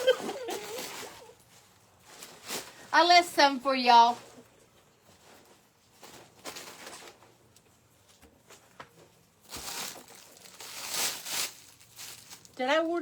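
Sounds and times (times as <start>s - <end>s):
plastic packaging rustling: 0.0s - 13.0s.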